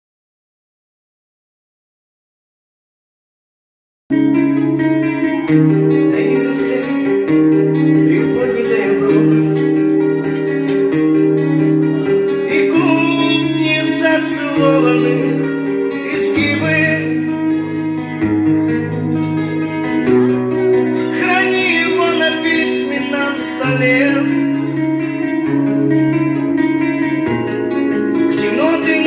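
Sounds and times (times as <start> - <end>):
guitar over held chords: 4.1 - 29.0
wavering lead melody: 4.1 - 29.0.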